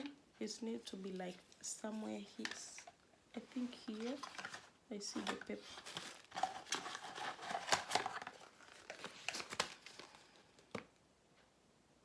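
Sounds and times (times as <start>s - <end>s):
packaging crinkling: 2.2s - 10.9s.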